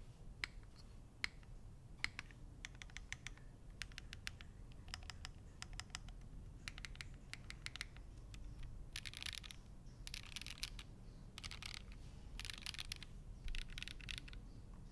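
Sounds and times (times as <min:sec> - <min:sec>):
mechanical keyboard typing: 0:02.0 - 0:10.8, 0:11.4 - 0:14.4.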